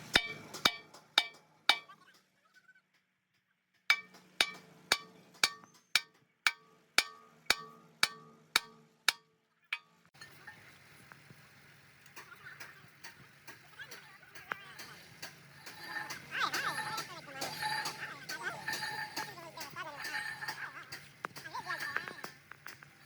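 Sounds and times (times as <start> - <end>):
hammer ringing on steel: 0.1 - 2.0, 3.9 - 10.1.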